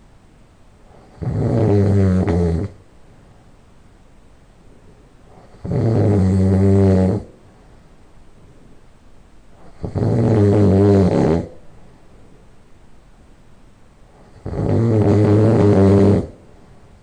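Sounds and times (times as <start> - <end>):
loud nasal snoring: 1.0 - 2.8, 5.4 - 7.3, 9.6 - 11.6, 14.2 - 16.4.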